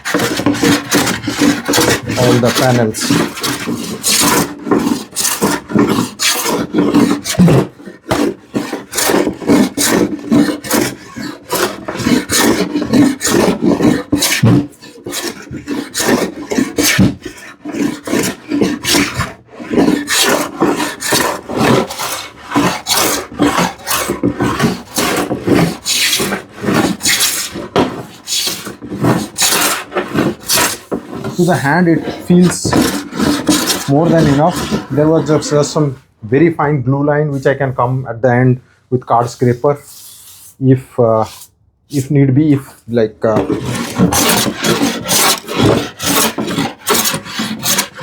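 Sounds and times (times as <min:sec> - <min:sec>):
hand plane rasping on wood: 0:00.0 - 0:36.1, 0:42.6 - 0:48.0.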